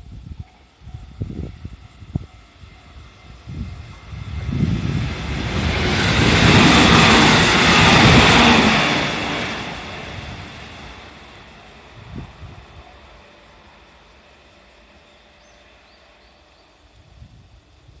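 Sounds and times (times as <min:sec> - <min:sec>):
train wheels clattering on rails: 0:03.9 - 0:13.1.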